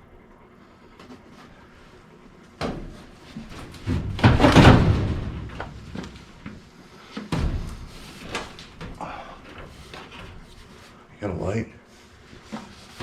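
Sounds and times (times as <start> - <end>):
sheet-metal knocks: 2.6 - 6.3.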